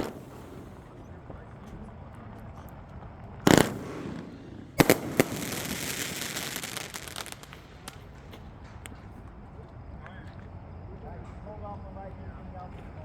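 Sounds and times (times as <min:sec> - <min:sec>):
high firework hiss: 0:00.0 - 0:01.5, 0:03.4 - 0:09.2
fireworks bangs: 0:00.0 - 0:09.8.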